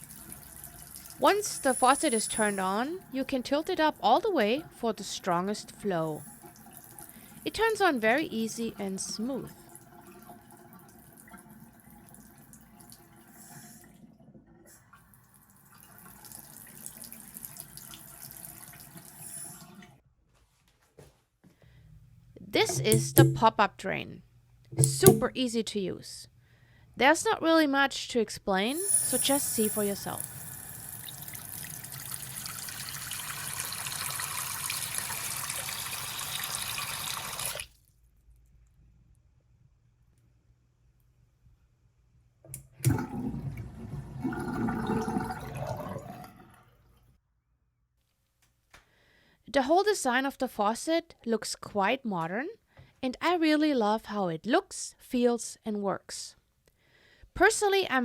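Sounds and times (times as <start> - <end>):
faucet water splashing into sink: 0.0 - 8.2, 14.9 - 19.9, 22.6 - 23.6, 24.8 - 25.4, 28.8 - 37.7, 42.5 - 46.6.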